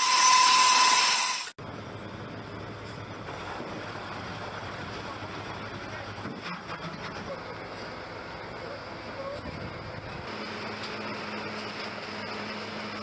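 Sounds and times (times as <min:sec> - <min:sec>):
helicopter turbine engines whistling: 0:07.3 - 0:13.0.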